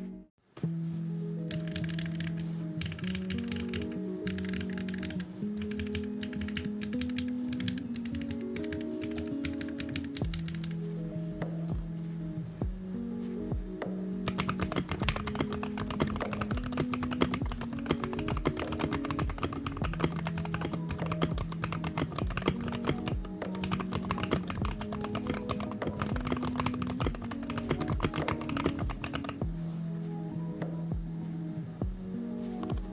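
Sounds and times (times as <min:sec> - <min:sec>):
fast mechanical keyboard typing: 0:01.5 - 0:10.8, 0:14.3 - 0:29.4.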